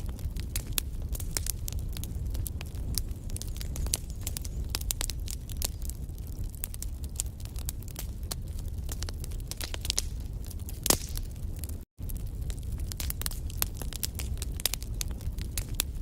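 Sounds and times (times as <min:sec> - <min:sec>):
low rumble of flames: 0:00.0 - 0:16.0
wood fire crackling and popping: 0:00.0 - 0:16.0.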